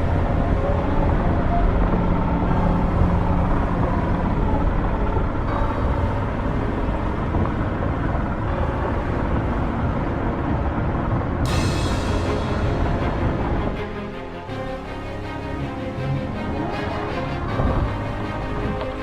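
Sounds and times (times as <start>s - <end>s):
rough rumble: 0.0s - 19.0s.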